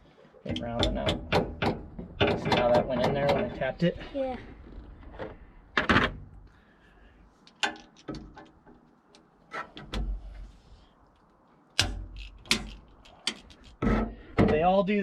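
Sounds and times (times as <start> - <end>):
hand tools knocking and clanking: 0.4 - 3.6.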